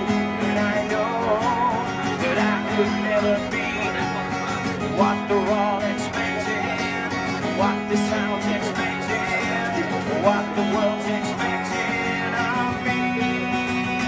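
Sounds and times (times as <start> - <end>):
acoustic guitar strumming: 0.0 - 14.0
person singing: 0.0 - 14.0.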